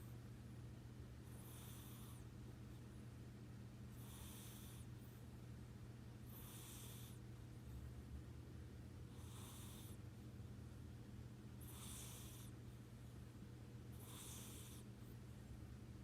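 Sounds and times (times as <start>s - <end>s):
steady low hum: 0.0s - 16.0s
cat snoring softly: 1.2s - 2.3s, 3.9s - 5.2s, 6.2s - 7.2s, 9.1s - 10.0s, 11.6s - 12.6s, 13.9s - 15.1s.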